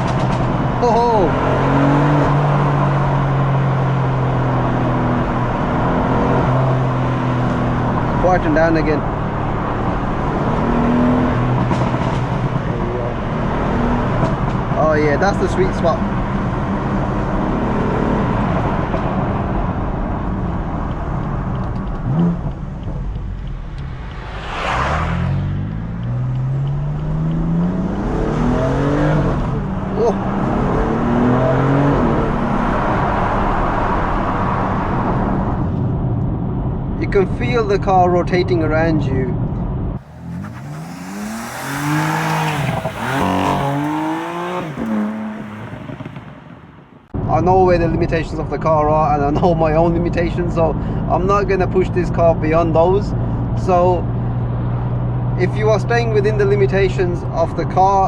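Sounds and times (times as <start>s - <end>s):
car engine accelerating hard: 0.0s - 36.0s, 40.0s - 47.1s
rush of noise: 23.6s - 25.6s
car exhaust droning: 40.0s - 47.2s.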